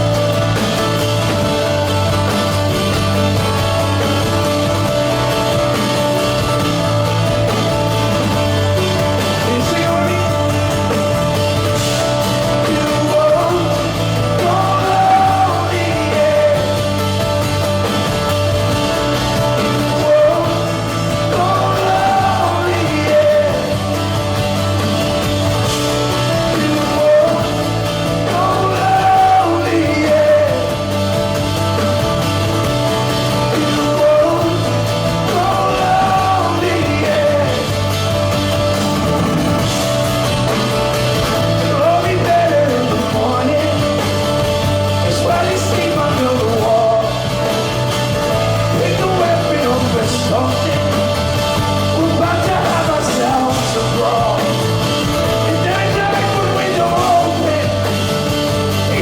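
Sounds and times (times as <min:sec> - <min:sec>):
live rock band playing: 0:00.0 - 0:59.0
person singing: 0:08.1 - 0:17.7, 0:18.7 - 0:24.3, 0:25.7 - 0:31.4, 0:33.3 - 0:38.3, 0:41.4 - 0:47.8, 0:48.5 - 0:59.0.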